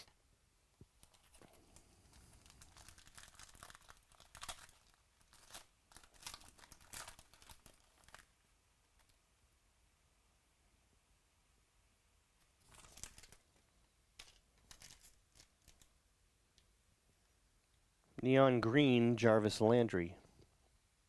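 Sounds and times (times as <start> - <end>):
plastic packaging crinkling: 1.0 - 8.4, 12.6 - 16.0.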